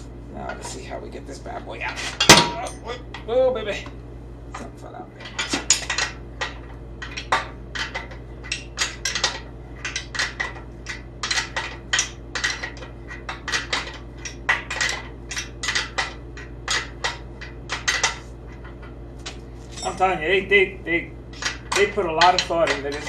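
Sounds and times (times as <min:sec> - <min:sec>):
metal tools clinking: 0:01.9 - 0:03.0, 0:19.6 - 0:20.2.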